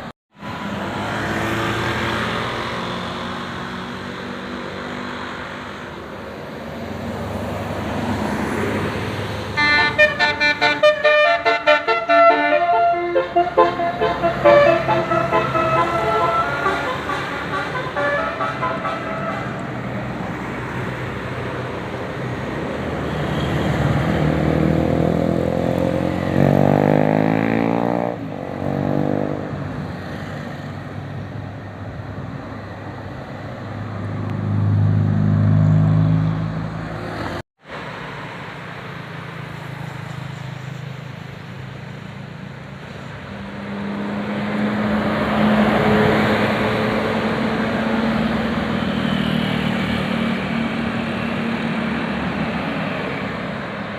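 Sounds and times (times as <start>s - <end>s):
engine noise: 0.0s - 53.9s
traffic noise: 0.0s - 53.9s
bus musical horn notes: 9.6s - 20.0s.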